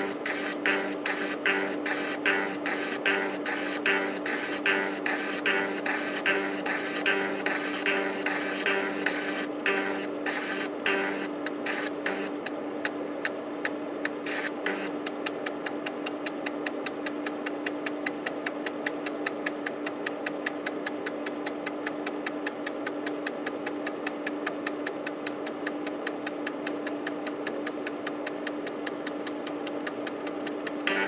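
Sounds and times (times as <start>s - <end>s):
steady hum: 0.0s - 16.0s, 30.8s - 31.0s.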